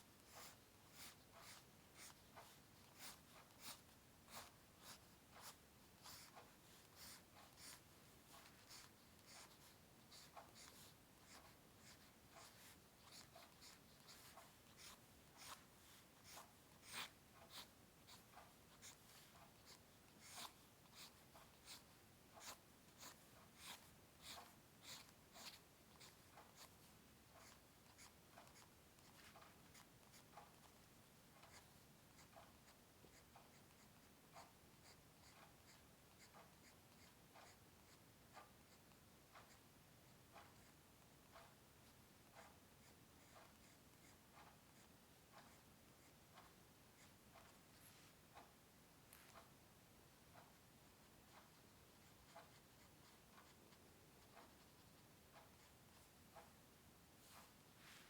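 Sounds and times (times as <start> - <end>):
drawing tool scratching paper: 0.2 - 21.8, 22.4 - 26.8.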